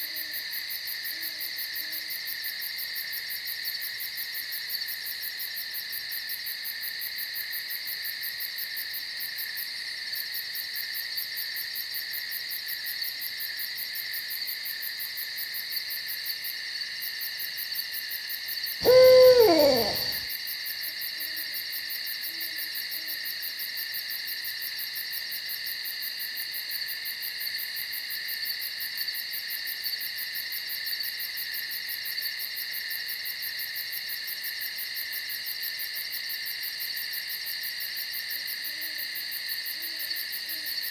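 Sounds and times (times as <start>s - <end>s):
insect chorus: 18.8s - 20.2s
owl hoot: 18.8s - 20.2s.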